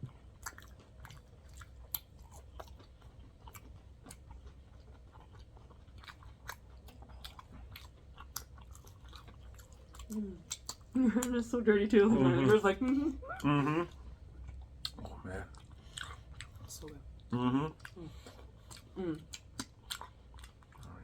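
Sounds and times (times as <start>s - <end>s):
chewing and biting food: 0.0s - 11.5s, 13.5s - 21.0s.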